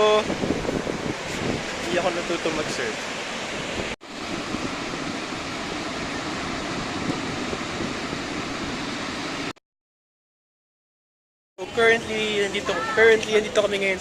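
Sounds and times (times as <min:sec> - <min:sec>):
wind on the microphone: 0:00.0 - 0:09.5
ocean surf rushing: 0:00.0 - 0:09.6, 0:11.6 - 0:14.0.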